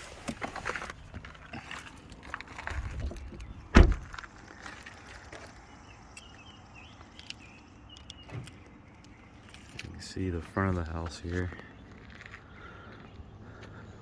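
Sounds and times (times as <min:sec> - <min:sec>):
rustling and shuffling: 0:00.0 - 0:05.7
car door slamming: 0:03.7 - 0:04.2.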